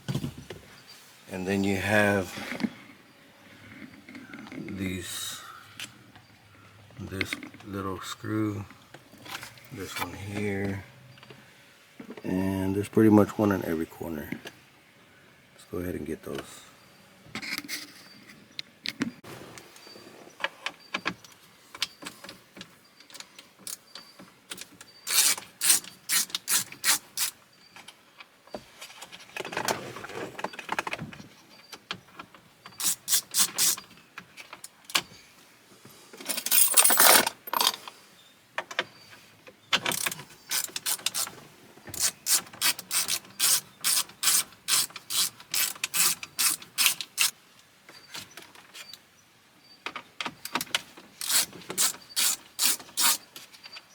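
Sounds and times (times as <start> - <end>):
ratchet clicking: 42.0 - 47.3, 51.2 - 53.2.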